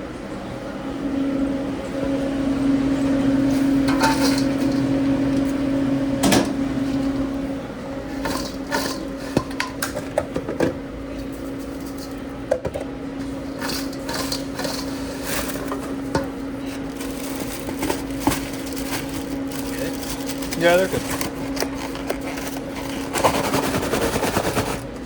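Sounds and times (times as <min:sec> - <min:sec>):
steady machine hum: 0:00.0 - 0:25.0
kitchen work clicks and knocks: 0:03.8 - 0:04.9, 0:06.2 - 0:06.6, 0:08.2 - 0:10.8.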